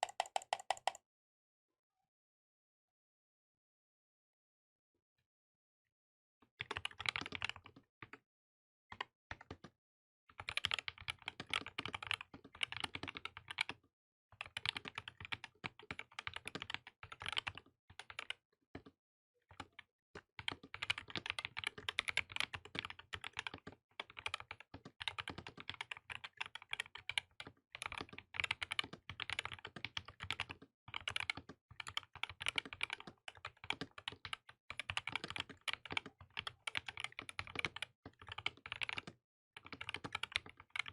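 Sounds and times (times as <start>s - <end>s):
mechanical keyboard typing: 0.0s - 1.0s, 6.6s - 7.7s, 10.4s - 13.7s, 14.4s - 18.4s, 20.4s - 40.9s.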